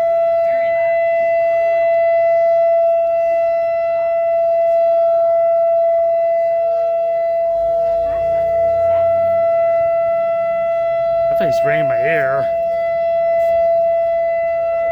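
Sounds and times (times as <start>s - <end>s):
warning siren steady tone: 0.0s - 14.9s.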